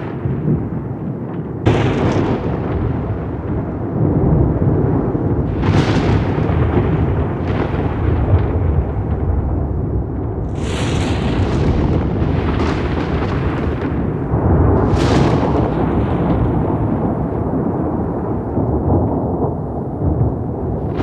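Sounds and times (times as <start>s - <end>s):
rolling thunder: 0.0s - 21.0s.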